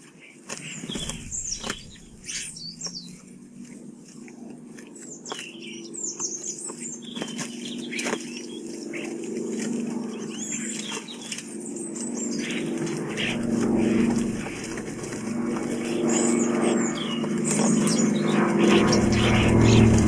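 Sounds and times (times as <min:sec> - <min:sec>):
wing flaps: 0:00.4 - 0:03.8, 0:12.1 - 0:20.0
low steady hum: 0:00.5 - 0:06.0, 0:11.4 - 0:20.0
starlings chattering: 0:00.6 - 0:03.5, 0:11.7 - 0:20.0.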